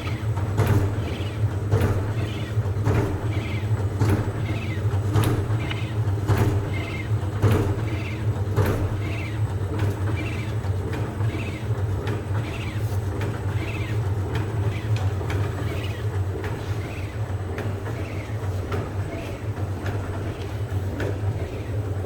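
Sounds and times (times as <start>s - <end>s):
machine motor hum: 0.0s - 22.0s
repeating machine cycle sound: 0.0s - 22.0s
machine clicks: 1.8s - 21.7s.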